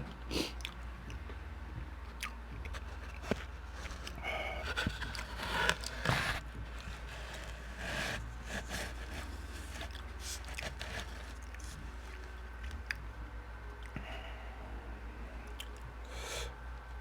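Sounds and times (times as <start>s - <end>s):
low hum: 0.0s - 17.0s
person chewing: 0.3s - 1.3s, 2.1s - 13.0s.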